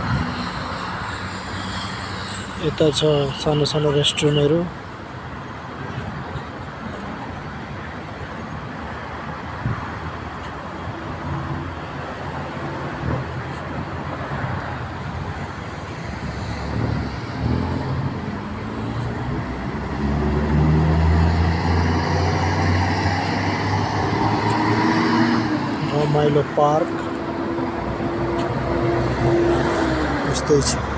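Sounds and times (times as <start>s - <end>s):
passing cars: 0.0s - 30.9s
vehicle engine humming close by: 15.2s - 30.9s.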